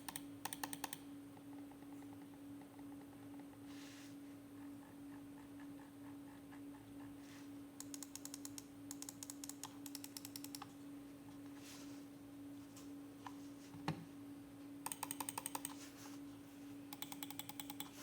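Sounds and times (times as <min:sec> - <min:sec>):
mouse buttons clicking rapidly: 0:00.0 - 0:01.0, 0:07.8 - 0:10.7, 0:14.9 - 0:15.8, 0:16.9 - 0:18.0
steady low hum: 0:00.0 - 0:18.0.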